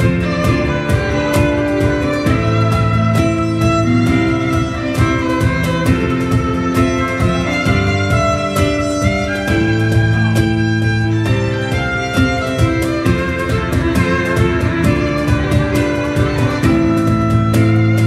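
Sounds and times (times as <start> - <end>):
band with steady drum beat: 0.0 - 18.0
violin melody: 0.0 - 18.0.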